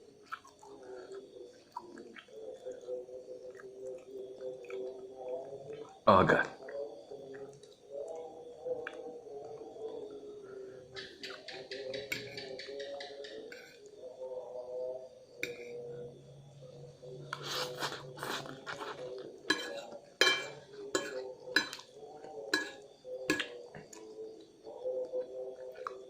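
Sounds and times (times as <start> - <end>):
faint background music: 0.0 - 26.0
cutlery clinking against a bowl: 11.0 - 13.8, 15.4 - 15.8, 17.4 - 23.6.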